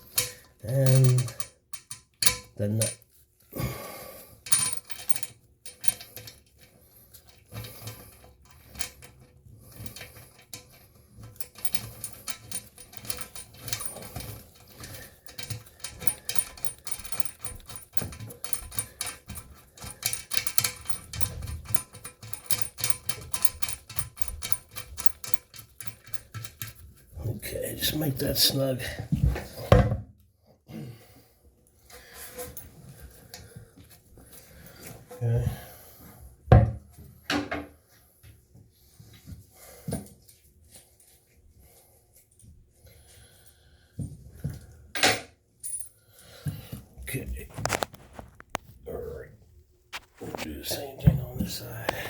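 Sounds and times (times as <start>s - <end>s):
metallic clinks of washer and nut: 0.0s - 3.2s, 4.4s - 27.2s
rapid clicking of nut tightening: 4.4s - 27.0s.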